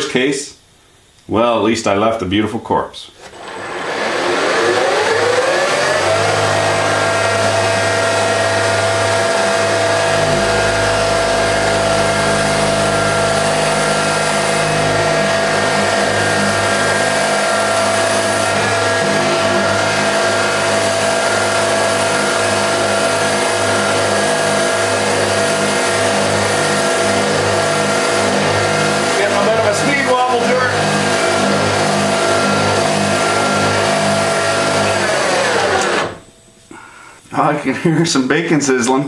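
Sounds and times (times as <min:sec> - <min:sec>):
milling machine spindle whining: 0:03.2 - 0:36.4
deep rumble: 0:06.7 - 0:24.7.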